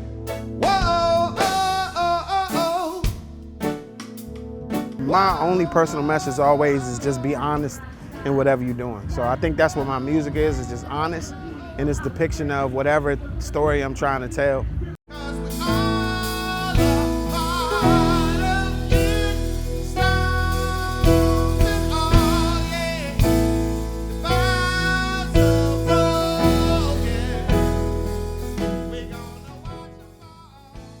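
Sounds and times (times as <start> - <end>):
song with beat and bass: 0.0 - 5.1, 15.1 - 31.0.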